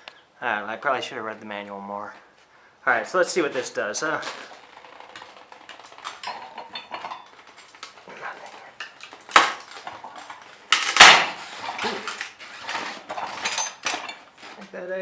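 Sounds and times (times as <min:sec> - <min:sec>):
tire bead breaking with bang: 0:03.6 - 0:14.6
metal clicks and rattles: 0:04.2 - 0:14.6.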